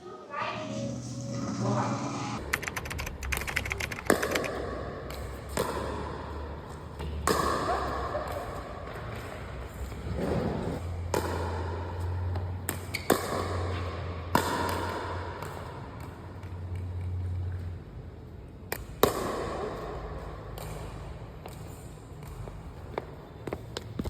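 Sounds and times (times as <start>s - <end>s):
steady low hum: 0.0s - 7.0s.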